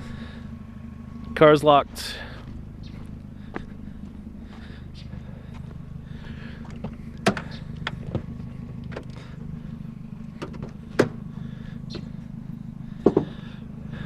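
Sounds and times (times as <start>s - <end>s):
car engine idling: 0.0s - 14.0s
hard objects knocking: 13.0s - 13.3s.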